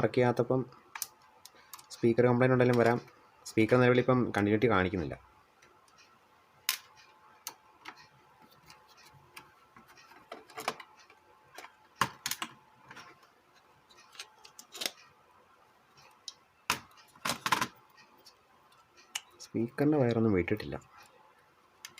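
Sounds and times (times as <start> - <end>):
tools and plastic parts clicking: 6.7 - 13.2, 13.8 - 15.1.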